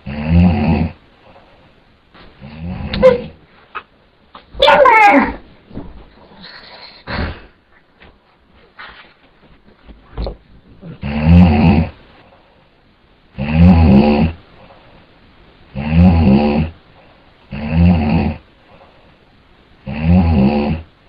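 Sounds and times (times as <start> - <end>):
man snoring loudly: 0.0 - 1.0, 10.9 - 12.0, 13.4 - 14.4, 15.8 - 16.8, 17.5 - 18.4, 19.8 - 20.9.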